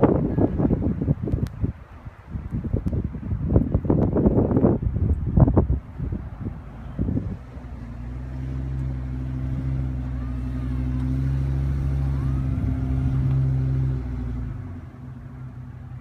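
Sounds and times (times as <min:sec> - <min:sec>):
pickup truck engine running: 0:05.2 - 0:16.0.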